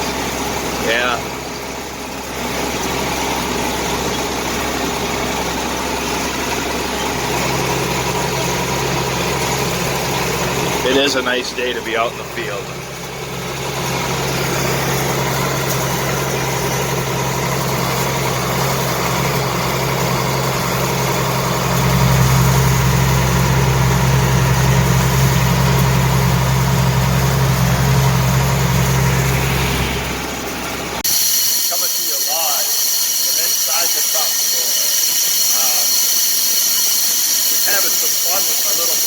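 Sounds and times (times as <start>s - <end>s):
tractor engine under load: 0.0s - 31.1s.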